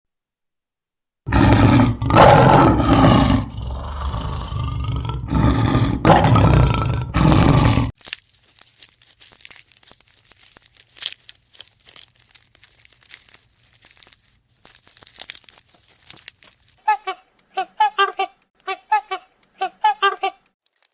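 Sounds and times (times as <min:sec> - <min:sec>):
animal roaring: 0:01.3 - 0:07.9
crunching and rustling: 0:01.3 - 0:17.4, 0:20.6 - 0:20.9.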